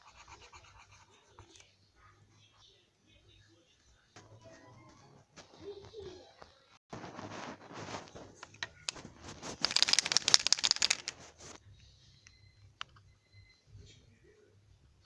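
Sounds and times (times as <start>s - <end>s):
pencil scratching on paper: 0.0s - 1.4s.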